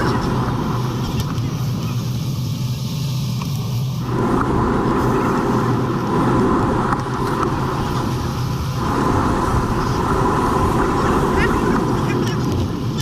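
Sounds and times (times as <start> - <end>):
tyre on road noise: 0.0 - 13.0
wind rush: 0.0 - 13.0.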